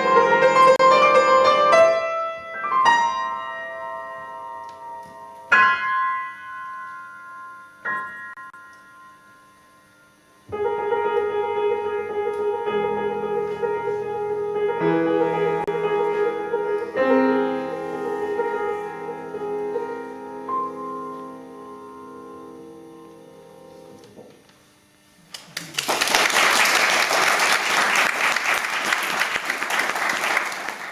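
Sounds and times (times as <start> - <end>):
piano chords: 0.0 - 24.2.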